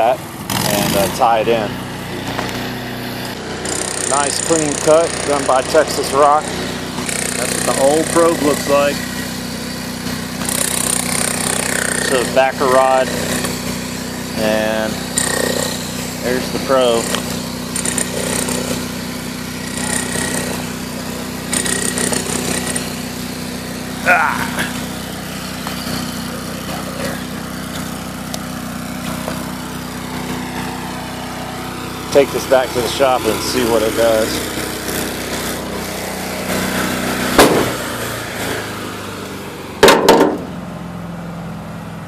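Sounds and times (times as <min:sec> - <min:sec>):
small engine running: 0:00.0 - 0:42.0
sharp bangs: 0:37.3 - 0:37.9.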